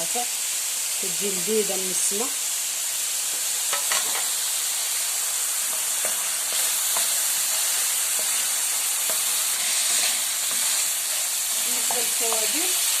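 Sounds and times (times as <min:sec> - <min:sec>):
meat sizzling in oil: 0:00.0 - 0:13.0.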